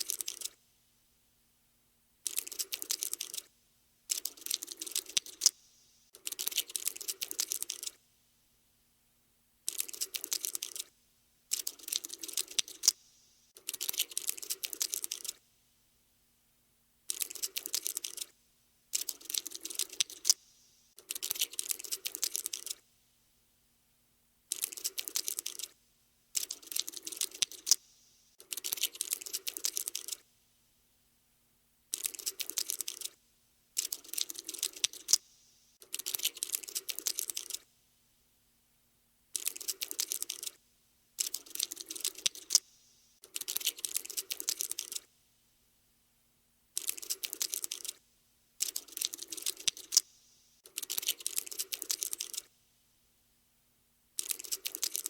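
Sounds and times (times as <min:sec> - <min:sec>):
scratchy scuttling clicks: 0:11.5 - 0:13.0, 0:17.1 - 0:18.3, 0:18.9 - 0:20.4, 0:26.4 - 0:27.8, 0:33.8 - 0:35.2, 0:39.4 - 0:40.6, 0:41.2 - 0:42.6, 0:48.6 - 0:50.0, 0:50.7 - 0:52.5.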